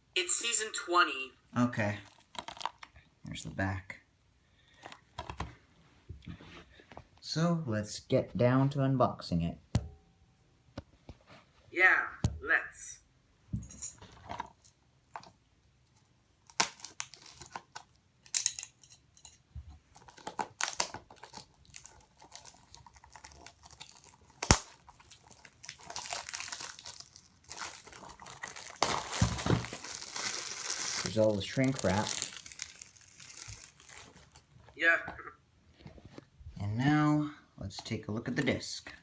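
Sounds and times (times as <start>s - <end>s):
plastic shrink wrap crinkling: 1.8s - 3.0s, 16.4s - 18.8s, 19.9s - 34.8s.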